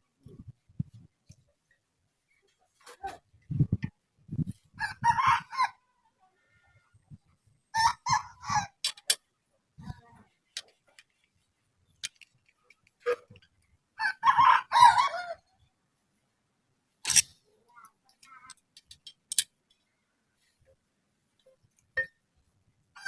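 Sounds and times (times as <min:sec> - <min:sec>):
chickens clucking: 0:07.8 - 0:08.8.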